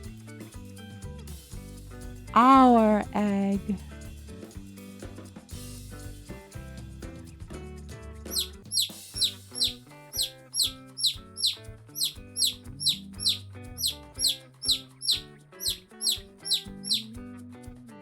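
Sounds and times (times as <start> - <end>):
baby chick cheeping: 8.3 - 17.1.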